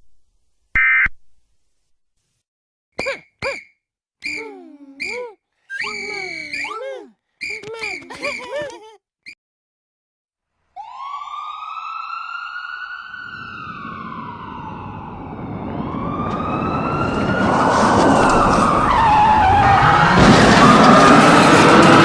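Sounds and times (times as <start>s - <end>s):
siren wail: 5.8s - 8.4s, 10.8s - 22.0s
rumbling vehicle noise: 13.1s - 22.0s.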